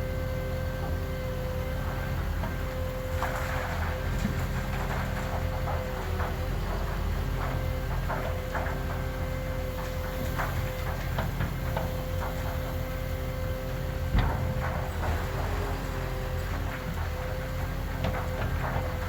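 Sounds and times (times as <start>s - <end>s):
heavy earthmoving machine running: 0.0s - 19.0s
metal clanks and knocks: 0.9s - 19.0s.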